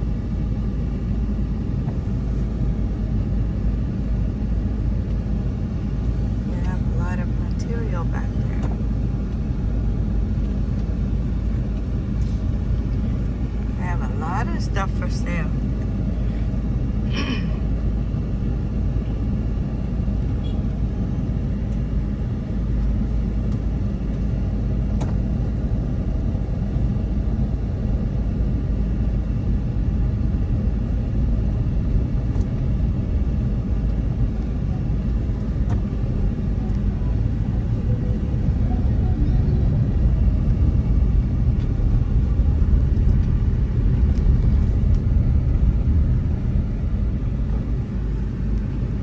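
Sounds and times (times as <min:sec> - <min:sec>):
car engine rumble: 0:00.0 - 0:49.0
tyres on road: 0:30.8 - 0:49.0.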